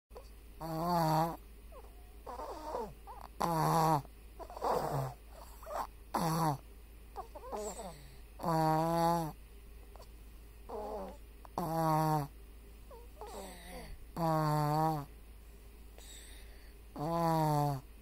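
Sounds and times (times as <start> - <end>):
loud snoring: 0.6 - 1.4, 2.3 - 6.6, 7.2 - 9.4, 10.7 - 12.3, 13.2 - 15.1, 17.0 - 17.9.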